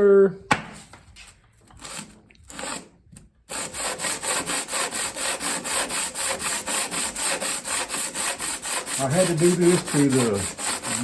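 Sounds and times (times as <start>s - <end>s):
metal plate scrubbed on sandpaper: 3.5s - 11.0s.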